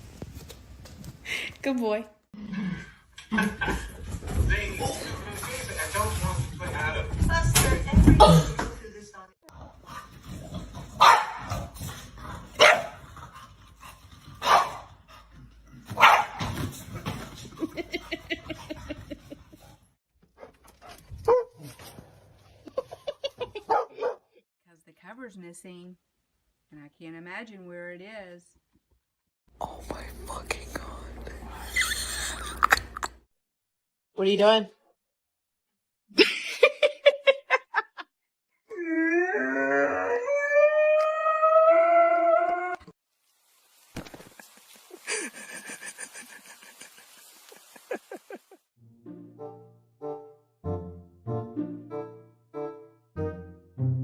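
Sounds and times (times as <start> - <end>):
dog barking: 11.0 - 11.6, 12.6 - 13.0, 14.4 - 14.9, 16.0 - 16.5, 23.6 - 24.3
dog howling: 38.7 - 42.9.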